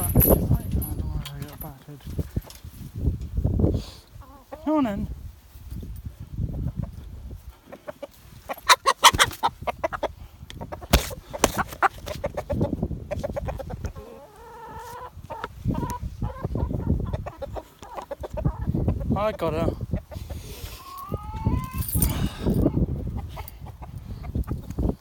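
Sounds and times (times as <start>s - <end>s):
hen clucking and squawking: 4.2s - 5.0s, 7.6s - 19.2s, 19.8s - 21.8s
rustling and scuffling: 10.9s - 12.4s.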